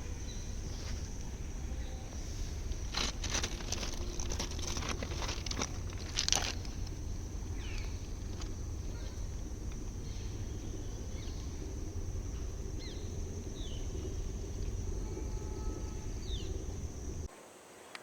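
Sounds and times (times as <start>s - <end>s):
wind rumbling on microphone: 0.0s - 17.3s
insect drone: 0.0s - 18.0s
bird chirps: 15.1s - 16.7s.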